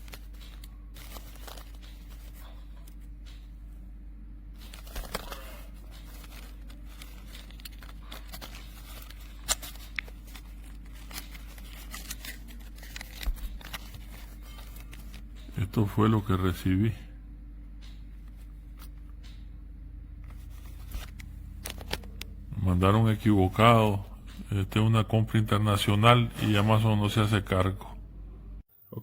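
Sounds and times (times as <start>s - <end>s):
packaging rustling and clicking: 0.0s - 3.4s, 4.6s - 15.6s, 20.3s - 22.3s
steady low hum: 0.0s - 28.7s.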